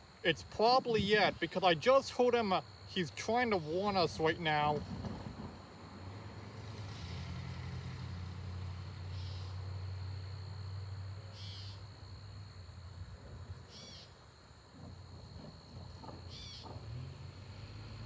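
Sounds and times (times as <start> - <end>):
insects droning: 0.0 - 18.0
bird chirping: 16.0 - 16.8.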